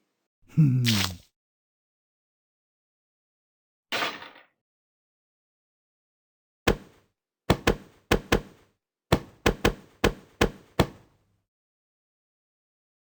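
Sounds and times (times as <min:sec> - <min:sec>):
sharp knocks: 0:06.7 - 0:11.0.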